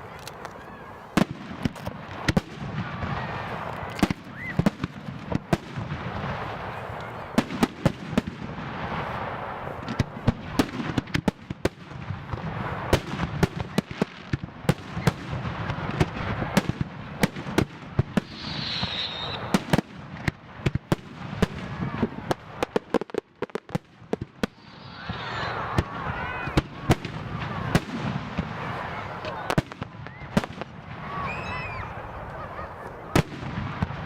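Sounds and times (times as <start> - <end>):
firework shells bursting: 17.2 - 21.0.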